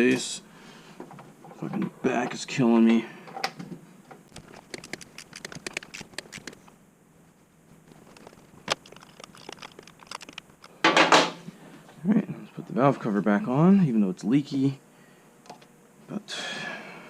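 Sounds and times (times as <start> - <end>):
hand tools clicking and tapping: 4.3 - 6.6.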